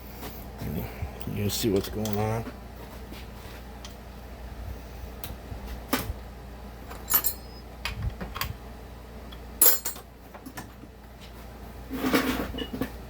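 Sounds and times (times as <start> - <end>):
metal tools clinking on workbench: 6.9 - 7.6, 9.6 - 10.0.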